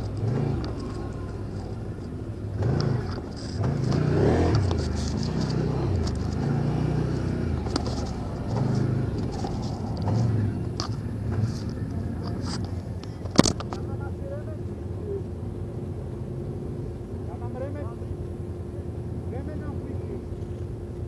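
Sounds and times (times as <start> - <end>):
sharp clicks and knocks: 0.0 - 13.9
atv engine revving: 0.0 - 17.6.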